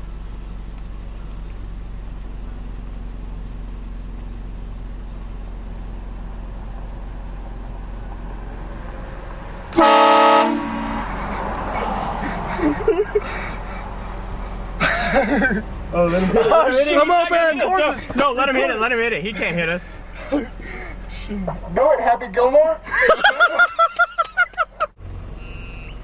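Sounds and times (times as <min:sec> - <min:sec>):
low engine hum: 0:00.0 - 0:26.0
train horn blast: 0:09.7 - 0:11.2.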